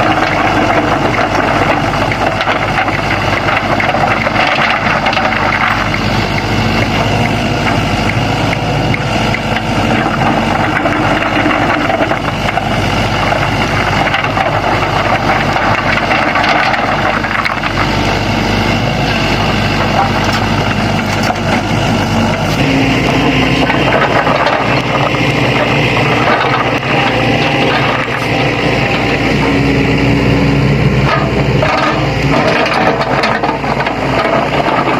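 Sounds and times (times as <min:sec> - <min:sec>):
excavator diesel engine running: 0:00.0 - 0:34.9.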